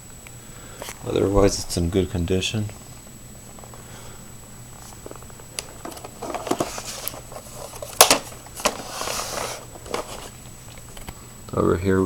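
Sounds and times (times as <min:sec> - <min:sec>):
handling clicks and rustling: 0:04.8 - 0:11.1.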